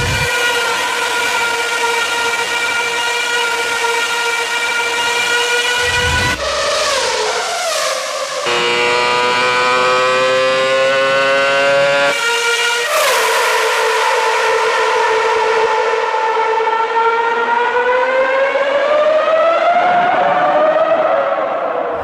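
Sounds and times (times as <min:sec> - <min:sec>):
race car engine at high revs: 0:00.0 - 0:06.8, 0:08.4 - 0:14.6.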